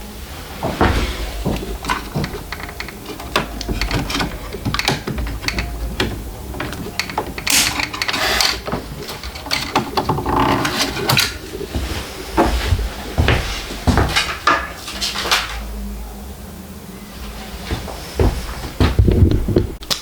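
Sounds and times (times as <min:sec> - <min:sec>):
plastic and metal parts clicking: 0:01.6 - 0:11.4.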